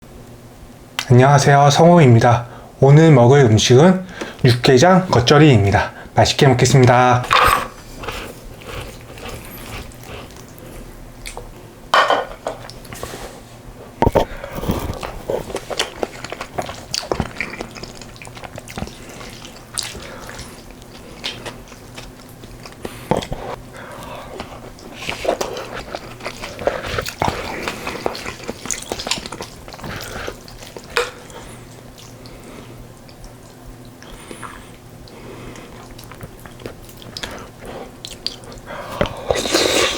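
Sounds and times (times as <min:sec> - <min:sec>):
utensils clinking against bowl: 0:07.2 - 0:07.8
spoon stirring and scraping in bowl: 0:07.2 - 0:10.3.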